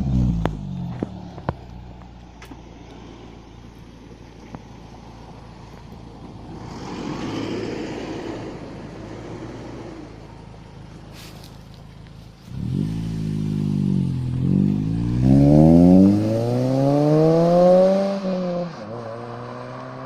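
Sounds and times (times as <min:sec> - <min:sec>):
exhaust pops: 0:00.0 - 0:02.7
car engine idling: 0:00.0 - 0:15.2.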